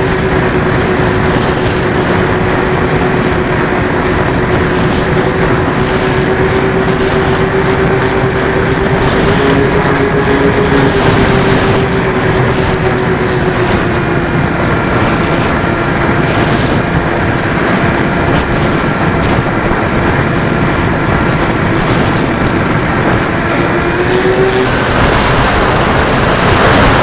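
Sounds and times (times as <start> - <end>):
aircraft propeller engine droning: 0.0 - 27.0
rushing wind noise: 0.0 - 27.0.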